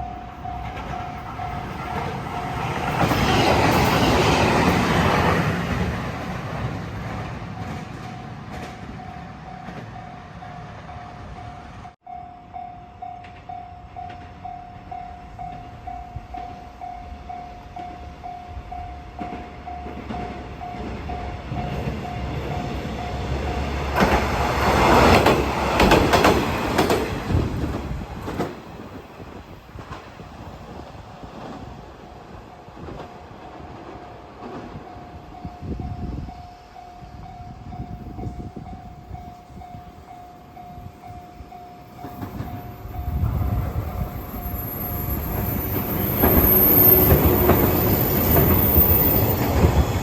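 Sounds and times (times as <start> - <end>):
diesel railcar passing: 0.0 - 50.0
passing train: 0.0 - 50.0
wheels clacking over rail joints: 0.4 - 10.0, 19.1 - 29.1, 41.9 - 50.0.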